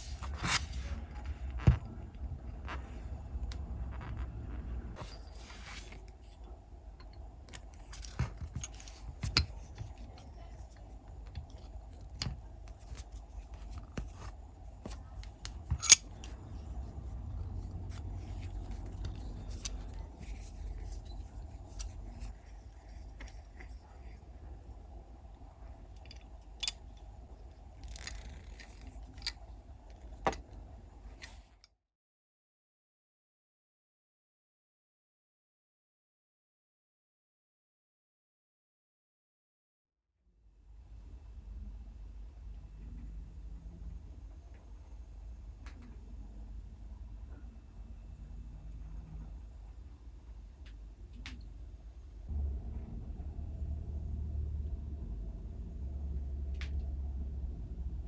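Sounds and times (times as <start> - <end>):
faint steady hum: 0.0 - 31.6, 40.4 - 58.0
small metal parts clicking: 15.8 - 16.3.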